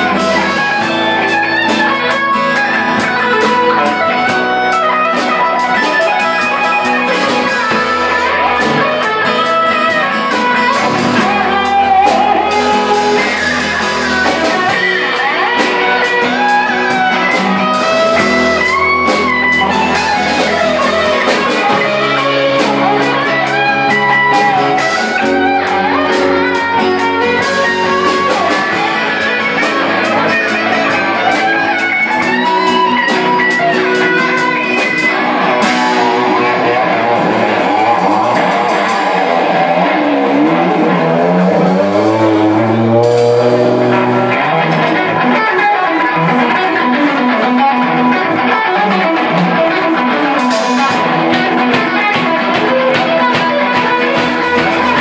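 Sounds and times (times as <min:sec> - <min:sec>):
bass line: 0:00.0 - 0:48.4
drums: 0:00.0 - 0:55.0
electric guitar lead: 0:00.0 - 0:55.0.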